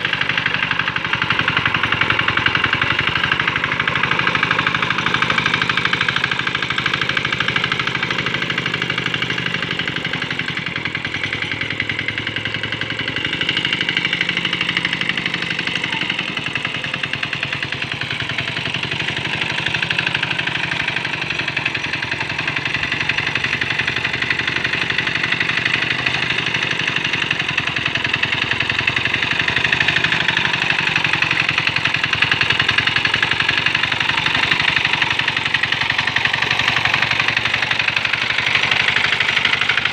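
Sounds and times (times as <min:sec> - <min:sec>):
small diesel engine chugging: 0:00.0 - 0:39.9.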